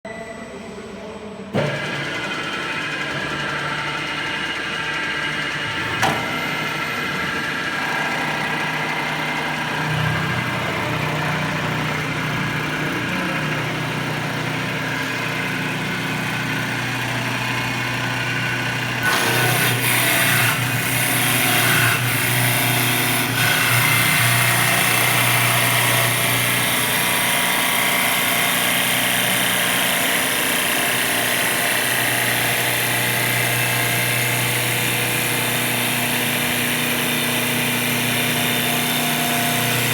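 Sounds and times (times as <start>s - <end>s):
wood lathe motor hum: 1.6s - 39.9s
tool cutting into turning wood: 19.0s - 39.9s.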